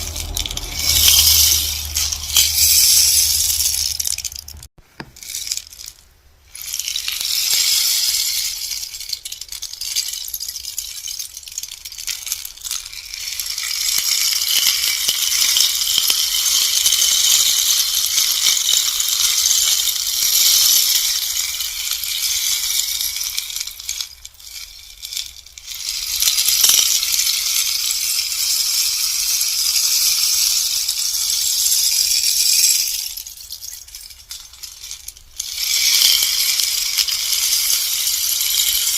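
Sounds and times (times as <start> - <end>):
rainstick pebbles trickling: 0.0 - 38.9.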